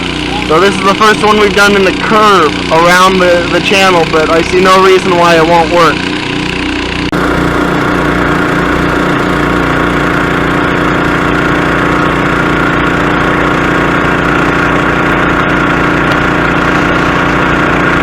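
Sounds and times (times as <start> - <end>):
water pump engine running: 0.0 - 18.0.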